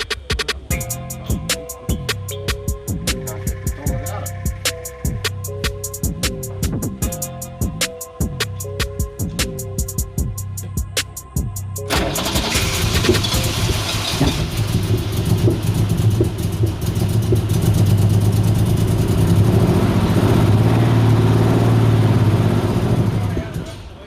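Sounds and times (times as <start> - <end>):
car engine running: 11.9 - 24.0
engine ticking: 11.9 - 24.0.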